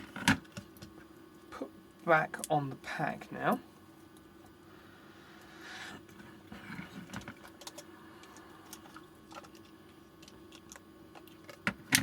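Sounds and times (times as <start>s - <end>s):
small parts clicking and tapping: 7.1s - 12.0s.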